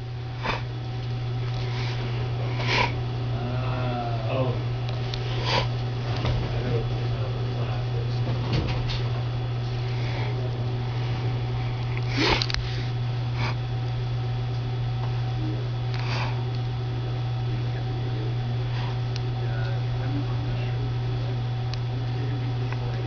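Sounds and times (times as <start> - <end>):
oven electrical hum: 0.0 - 23.0
breathy sniff: 0.4 - 0.7, 1.5 - 3.0, 5.2 - 5.8, 9.7 - 13.6, 16.0 - 16.4, 18.7 - 19.0.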